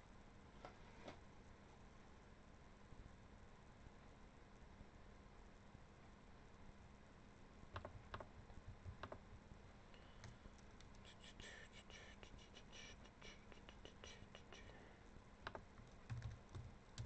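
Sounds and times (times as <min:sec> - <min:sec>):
low steady hum: 0:00.0 - 0:17.0
computer keyboard typing: 0:07.8 - 0:09.2, 0:15.5 - 0:17.0.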